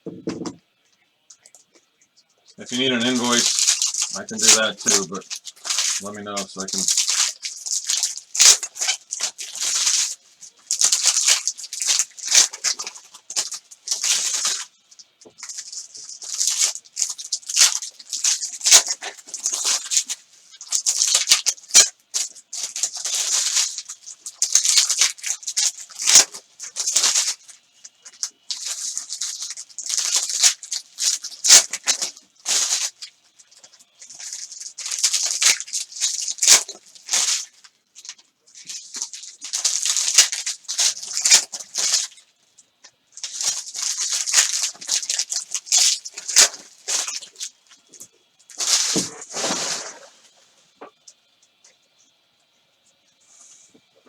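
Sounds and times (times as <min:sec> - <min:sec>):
foil wrappers tearing and crinkling: 0:02.5 - 0:42.3, 0:43.1 - 0:50.4.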